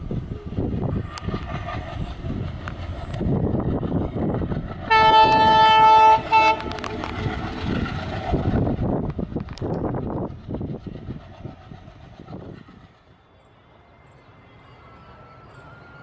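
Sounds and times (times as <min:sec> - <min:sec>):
train running: 0:00.0 - 0:16.0
locomotive horn blasts: 0:04.9 - 0:06.9.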